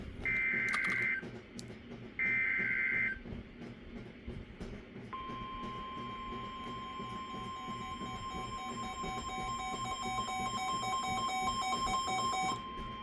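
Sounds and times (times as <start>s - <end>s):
steady warning alarm tone: 0.3s - 1.2s, 2.2s - 3.2s, 5.2s - 13.0s.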